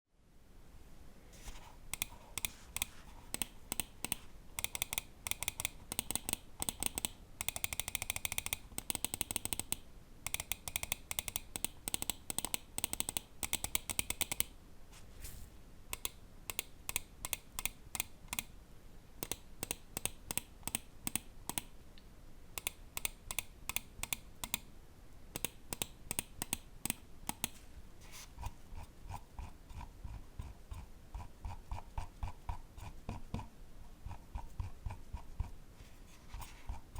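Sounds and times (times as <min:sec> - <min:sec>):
mouse buttons clicking: 0:01.9 - 0:14.5, 0:15.9 - 0:18.5, 0:19.2 - 0:21.7, 0:22.6 - 0:24.7, 0:25.4 - 0:27.6.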